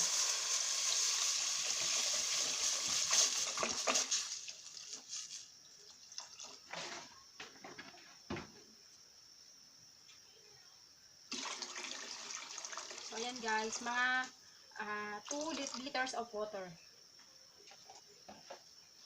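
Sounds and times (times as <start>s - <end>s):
water poured into hot pot: 0.0s - 5.0s, 11.3s - 13.8s, 15.2s - 16.0s.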